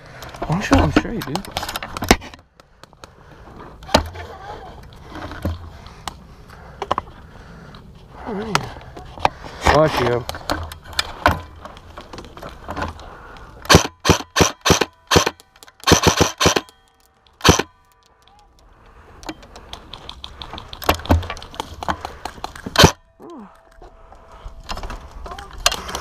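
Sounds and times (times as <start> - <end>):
airsoft gun firing: 13.7 - 16.7, 17.4 - 17.8, 22.8 - 23.0.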